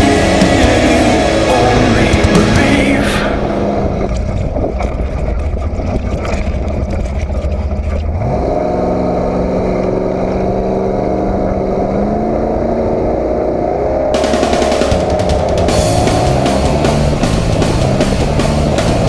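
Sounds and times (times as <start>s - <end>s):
truck engine running hard: 0.0s - 4.1s, 14.2s - 19.0s
rough rushing noise: 0.0s - 5.4s, 14.1s - 19.0s.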